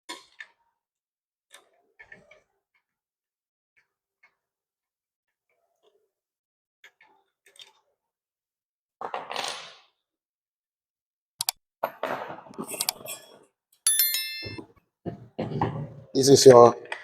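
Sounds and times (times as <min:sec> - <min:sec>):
bright metallic ring: 0:13.9 - 0:14.6.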